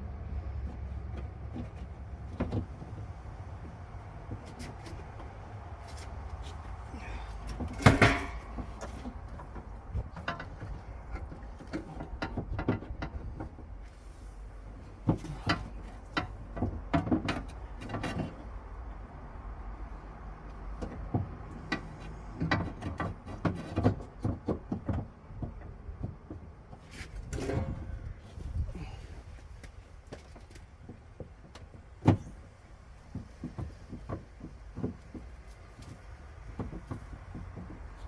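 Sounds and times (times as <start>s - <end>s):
clicks and rattles of car door parts: 7.4s - 13.8s, 14.8s - 18.5s, 20.8s - 27.9s, 30.1s - 38.0s.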